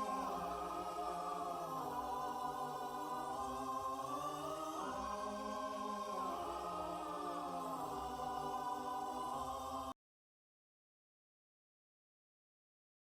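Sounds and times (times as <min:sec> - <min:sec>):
choir singing held chords: 0:00.0 - 0:10.0.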